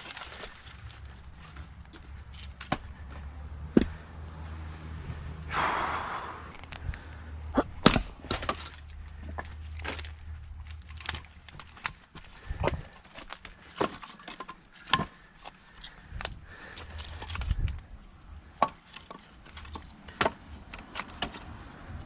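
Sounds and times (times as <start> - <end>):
firewood splitting blows: 0.0 - 22.0
rushing noise: 4.8 - 6.7.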